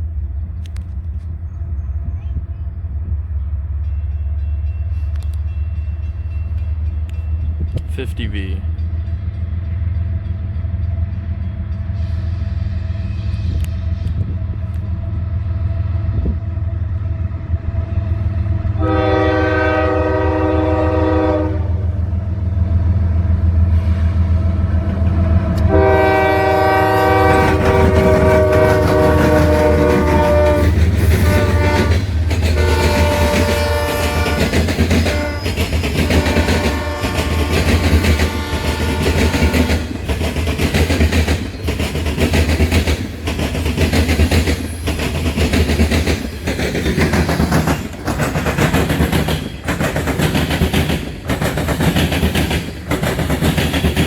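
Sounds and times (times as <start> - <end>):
diesel locomotive engines rumbling: 0.0 - 54.0
train air horn blasts: 18.6 - 22.0, 25.6 - 40.0
train wheel clatter: 23.7 - 54.0.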